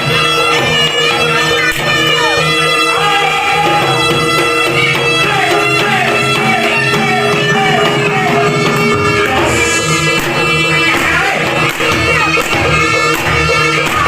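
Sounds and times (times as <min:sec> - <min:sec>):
drum strokes: 0:00.0 - 0:14.0
sliding pitched melody: 0:00.0 - 0:14.0
steady drone: 0:05.8 - 0:12.9.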